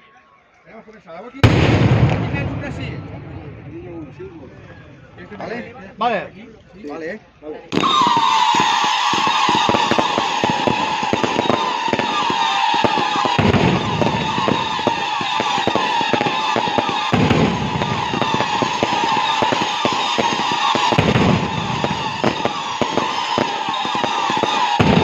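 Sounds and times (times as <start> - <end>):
deep firework booms: 1.4 - 4.6, 7.8 - 25.0
firework crackling: 7.7 - 25.0
whistling firework shells: 7.7 - 25.0.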